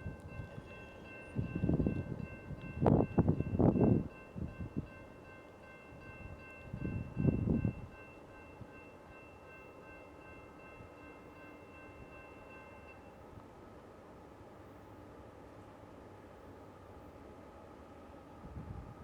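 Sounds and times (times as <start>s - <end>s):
railroad crossing bell ringing: 0.0s - 13.2s.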